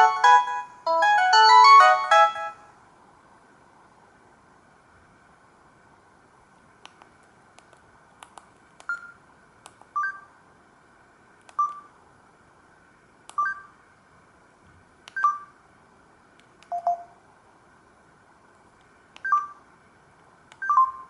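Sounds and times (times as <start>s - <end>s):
mobile phone electronic beeps: 8.9s - 9.2s, 10.0s - 10.3s, 11.6s - 11.9s, 13.4s - 13.7s, 15.1s - 15.6s, 16.7s - 17.2s, 19.2s - 19.6s, 20.6s - 21.0s.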